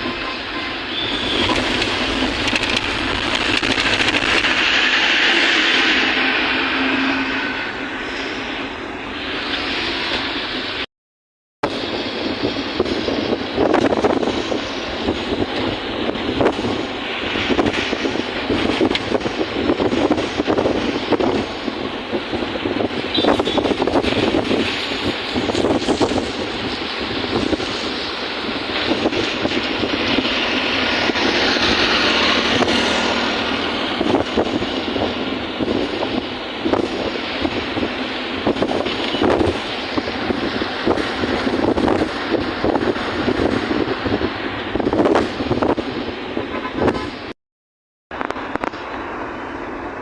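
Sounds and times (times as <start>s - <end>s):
wind on microphone: 11.6s - 47.3s
floodwater rushing roar: 19.2s - 46.5s.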